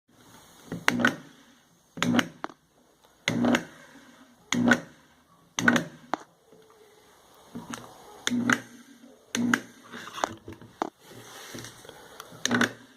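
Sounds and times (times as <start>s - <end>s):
router clunking bursts: 3.2s - 3.8s.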